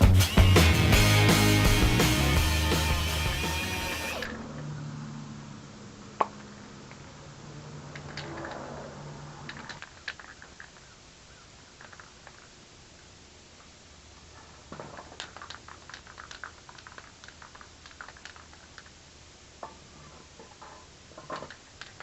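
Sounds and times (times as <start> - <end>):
background music: 0.0 - 4.3
small clicks: 7.9 - 8.7, 9.4 - 10.9, 11.8 - 12.5, 14.9 - 19.0, 21.2 - 22.0.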